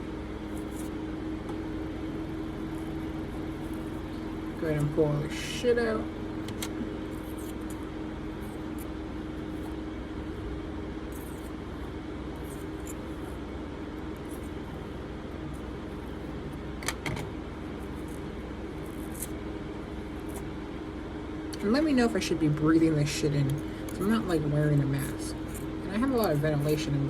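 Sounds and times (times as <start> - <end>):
room fans humming: 0.0 - 27.0
small scratches and ticks: 0.5 - 1.0, 2.6 - 5.0, 6.5 - 10.4, 11.1 - 13.4, 14.1 - 16.4, 17.7 - 19.4, 20.2 - 20.5, 24.8 - 26.9.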